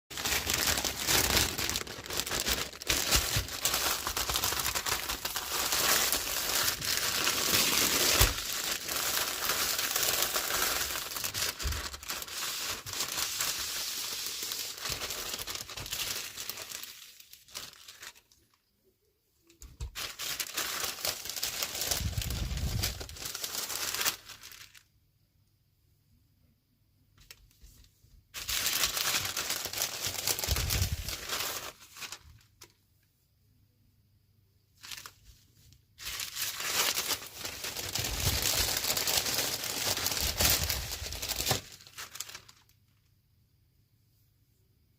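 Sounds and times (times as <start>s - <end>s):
packaging crinkling and tearing: 0.1s - 18.6s, 19.6s - 24.9s, 28.4s - 32.7s, 34.8s - 35.2s, 36.0s - 43.0s.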